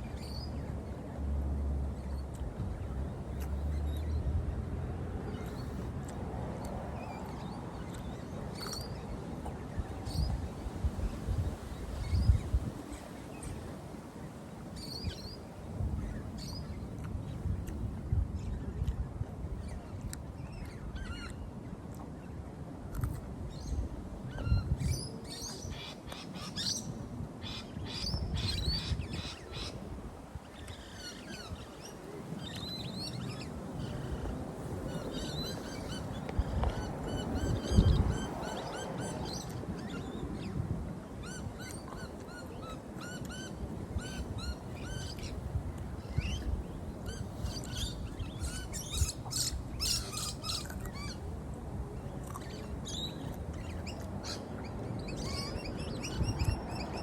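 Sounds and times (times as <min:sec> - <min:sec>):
small birds chirping: 0:23.0 - 0:51.4.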